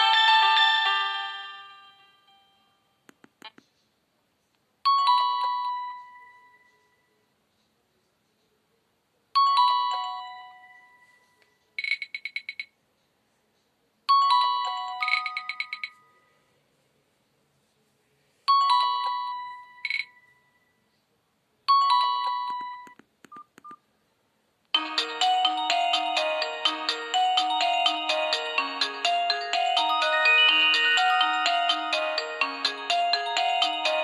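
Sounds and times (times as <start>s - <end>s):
ringtone melody: 0.0s - 2.7s, 4.9s - 6.8s, 9.4s - 11.2s, 14.1s - 16.3s, 18.5s - 20.4s, 21.8s - 22.8s, 24.8s - 34.0s.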